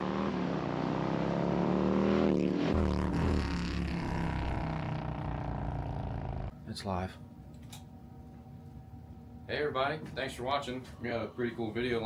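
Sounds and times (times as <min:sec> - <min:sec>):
motorcycle engine revving: 0:00.0 - 0:06.5.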